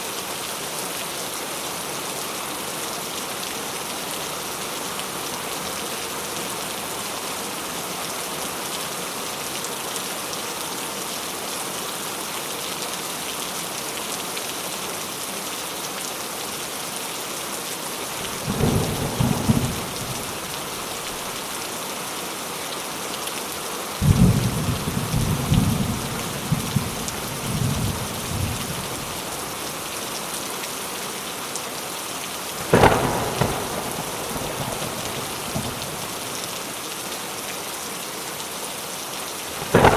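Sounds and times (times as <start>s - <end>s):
heavy rain: 0.0s - 39.9s
rolling thunder rumble: 18.2s - 21.4s, 24.0s - 29.6s, 32.6s - 36.2s, 39.6s - 39.9s
sharp thunderclap: 18.3s - 21.3s, 24.0s - 29.4s, 32.6s - 36.2s, 39.6s - 39.9s.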